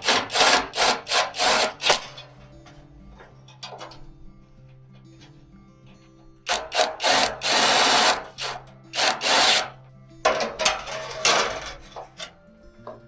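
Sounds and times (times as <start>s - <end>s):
power tool bursts: 0.0s - 2.3s, 6.5s - 12.0s
quiet background music: 0.0s - 13.0s.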